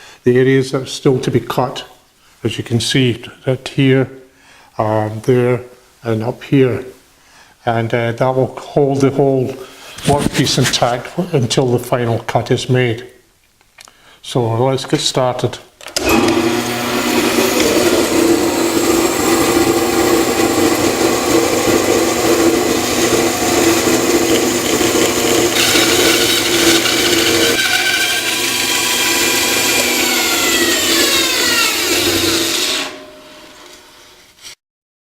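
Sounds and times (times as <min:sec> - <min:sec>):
saw whine coasting down: 0:16.0 - 0:33.0
band saw cutting wood: 0:16.0 - 0:34.1.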